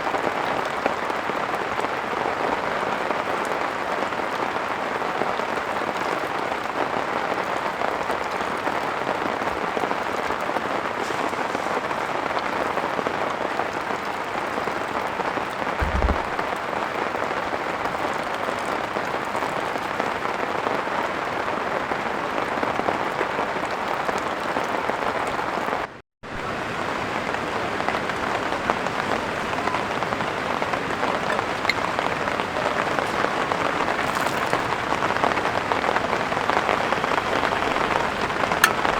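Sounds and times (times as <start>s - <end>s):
heavy rain falling: 0.0s - 38.9s
dull low thump: 15.8s - 16.5s.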